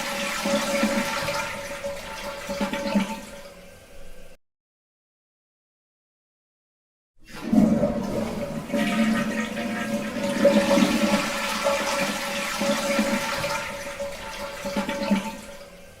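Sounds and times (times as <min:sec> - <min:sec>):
toilet flushing: 0:00.0 - 0:03.8, 0:07.2 - 0:16.0.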